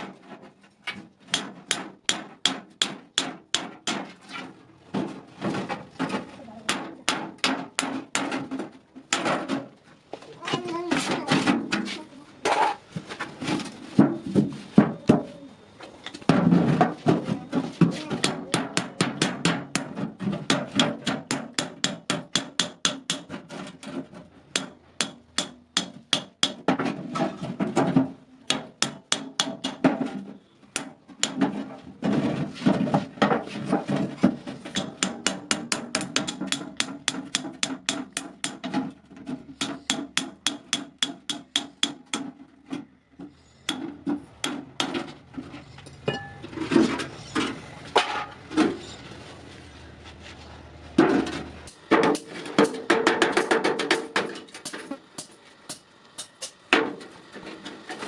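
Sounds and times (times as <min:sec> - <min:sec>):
hammer striking iron: 0:01.3 - 0:04.1, 0:06.7 - 0:09.6, 0:18.1 - 0:23.6, 0:24.5 - 0:27.0, 0:28.5 - 0:31.6, 0:34.6 - 0:39.0, 0:39.6 - 0:42.4, 0:43.7 - 0:45.1, 0:51.1 - 0:57.0.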